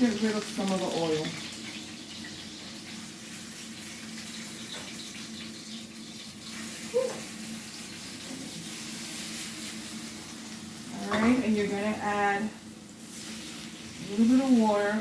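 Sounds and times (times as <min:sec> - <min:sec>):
kitchen tap running: 0:00.0 - 0:09.1.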